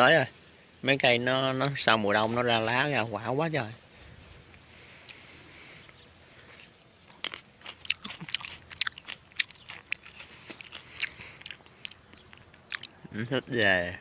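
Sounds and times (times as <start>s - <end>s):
person chewing grapes: 3.9s - 13.2s.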